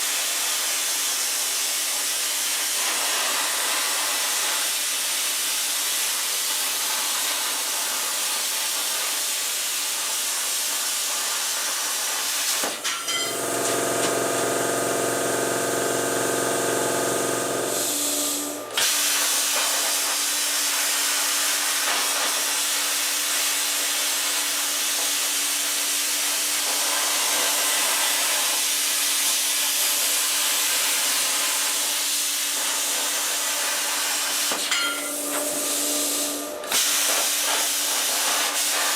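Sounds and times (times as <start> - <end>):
power tool hissing: 10.8 - 38.9
pitched hum: 13.2 - 18.0.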